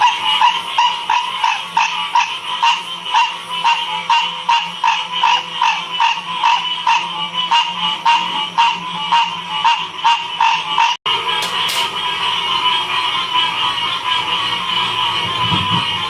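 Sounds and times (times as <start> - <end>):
chorus of frogs calling: 0.0 - 11.6.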